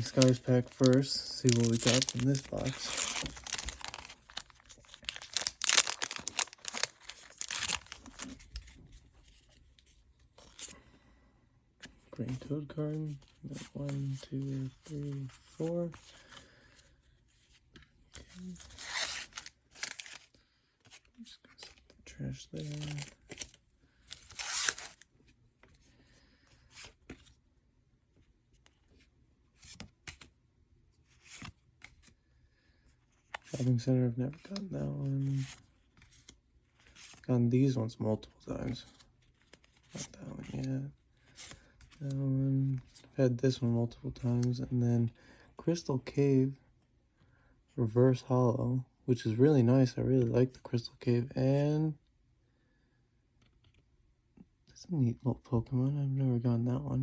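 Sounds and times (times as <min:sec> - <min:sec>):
foil wrapper tearing and crinkling: 0:00.0 - 0:08.3
trading cards sliding and rustling: 0:00.0 - 0:10.8, 0:17.8 - 0:21.0, 0:22.6 - 0:25.1.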